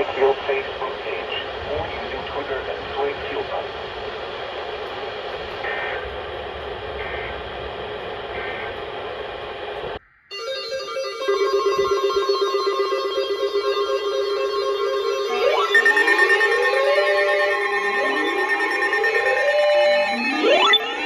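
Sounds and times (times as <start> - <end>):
steady hiss: 0.0 - 10.0
emergency alert alarm tones: 10.3 - 21.0.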